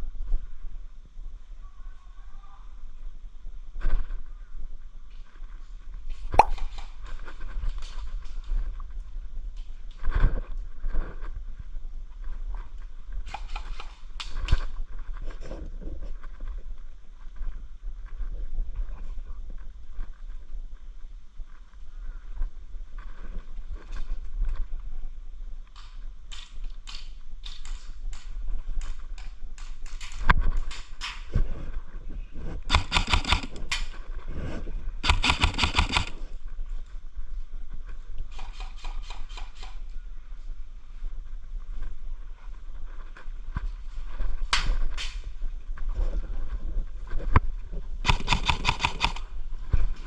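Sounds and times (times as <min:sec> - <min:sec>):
airsoft guns firing: 0:32.7 - 0:33.9, 0:35.0 - 0:36.2, 0:48.1 - 0:49.3.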